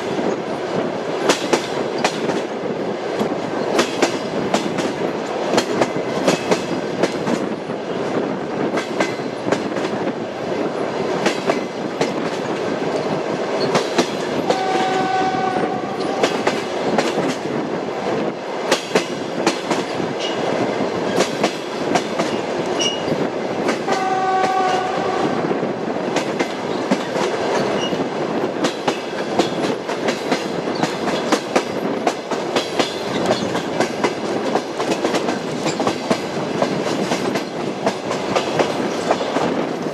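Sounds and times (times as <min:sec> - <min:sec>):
train wheels clattering over rail joints: 0:00.0 - 0:17.6, 0:18.2 - 0:25.0, 0:26.0 - 0:39.9
train horn: 0:14.5 - 0:16.6, 0:23.9 - 0:25.5.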